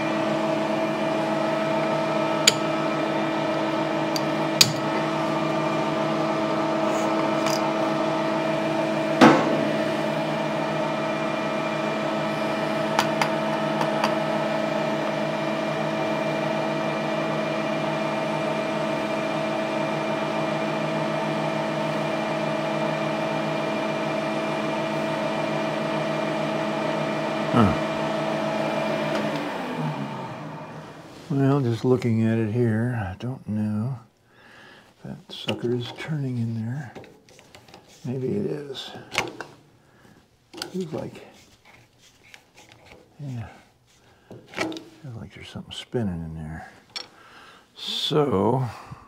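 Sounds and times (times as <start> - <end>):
electric motor running: 0.0 - 31.6.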